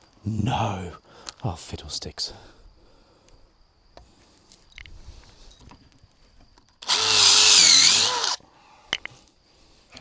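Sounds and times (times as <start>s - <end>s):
cordless drill motor whining: 6.8s - 8.4s.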